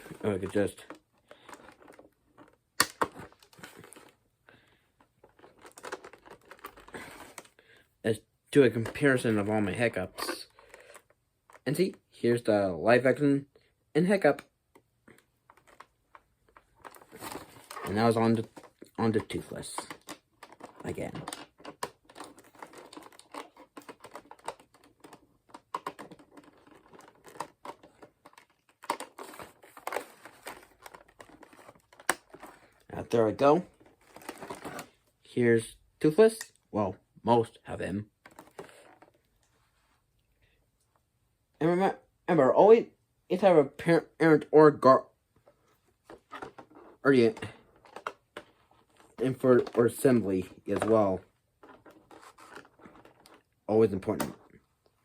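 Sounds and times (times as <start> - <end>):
toy packaging rustling and clicking: 0.0 - 7.8, 8.6 - 12.0, 14.0 - 35.2, 38.2 - 39.5, 45.4 - 55.0.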